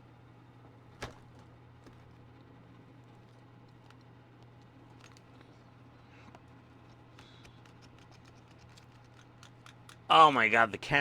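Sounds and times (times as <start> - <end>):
steady low hum: 0.0 - 11.0
small parts and pliers clicking: 6.8 - 10.1.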